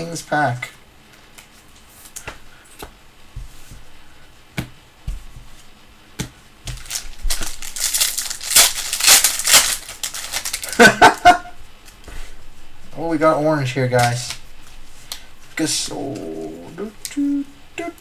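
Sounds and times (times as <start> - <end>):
foil wrapper crinkling: 6.7 - 11.4.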